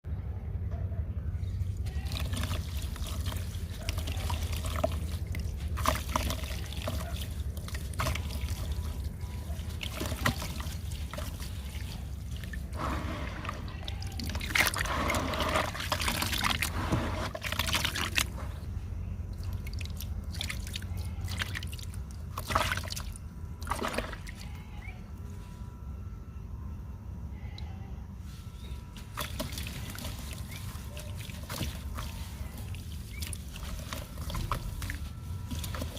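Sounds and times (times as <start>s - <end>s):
steady low hum: 0.0s - 35.9s.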